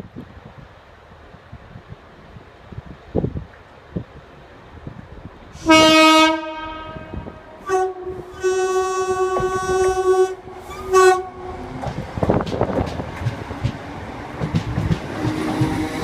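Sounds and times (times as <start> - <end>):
locomotive two-tone air horn: 5.6 - 11.6.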